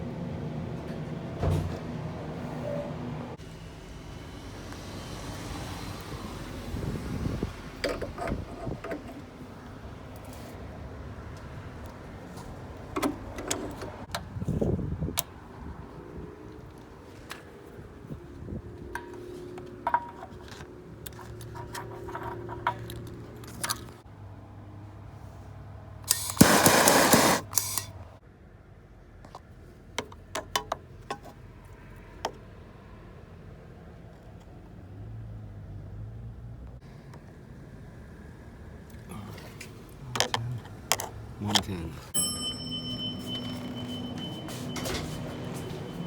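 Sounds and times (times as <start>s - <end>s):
loud hiss: 26.1s - 27.8s
metal tools clinking: 41.5s - 45.6s.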